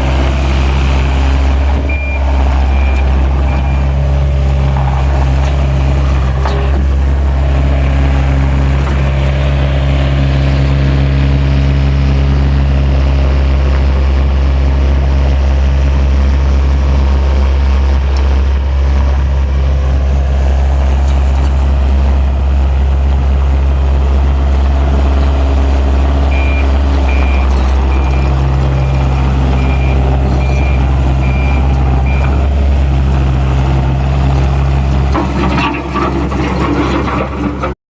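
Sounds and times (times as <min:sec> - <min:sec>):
diesel engine running: 0:00.0 - 0:37.8
backup alarm beeping: 0:01.8 - 0:04.0, 0:26.3 - 0:32.5.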